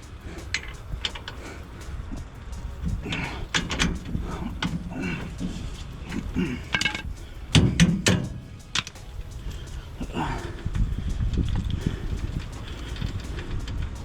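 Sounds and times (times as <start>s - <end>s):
hand tools knocking and clanking: 2.6s - 10.8s.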